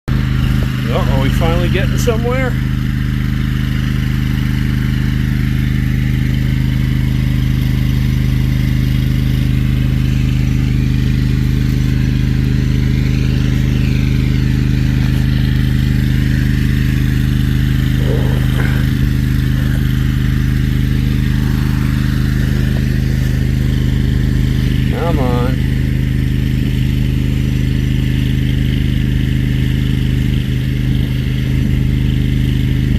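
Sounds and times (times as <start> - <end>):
hydro jetter engine and pump running: 0.1 - 32.9.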